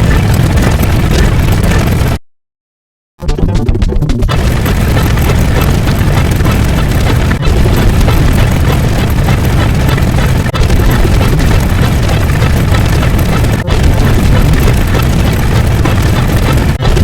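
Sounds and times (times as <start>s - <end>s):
booms and rumbling: 0.0s - 2.2s, 4.3s - 17.0s
music: 3.2s - 4.4s.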